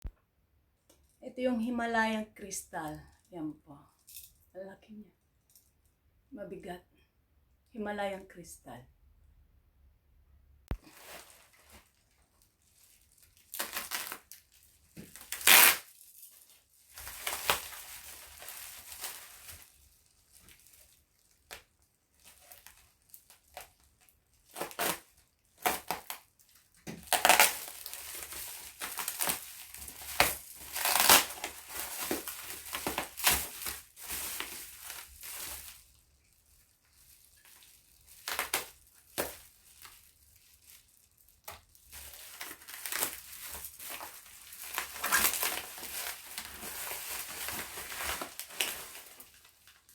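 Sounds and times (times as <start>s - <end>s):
packing wrap crumpling and tearing: 10.7s - 49.9s.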